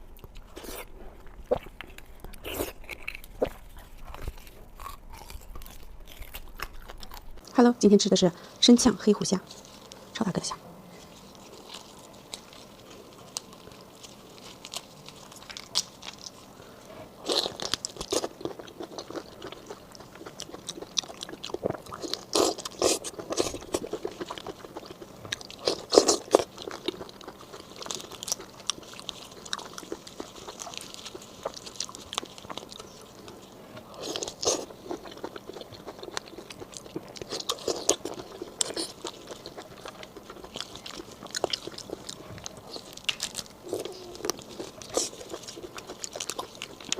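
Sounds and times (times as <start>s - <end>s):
crunching and chewing: 0.0s - 7.6s, 9.3s - 10.2s, 10.9s - 46.9s
wet mouth noises: 0.2s - 7.4s.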